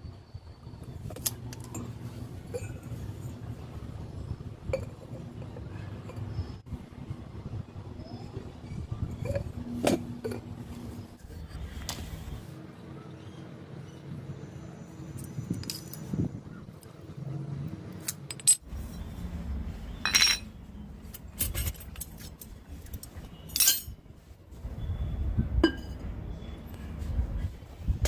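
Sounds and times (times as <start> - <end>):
metal and glass clinking: 18.1 - 18.6, 20.0 - 20.6, 21.4 - 24.0, 25.6 - 26.0.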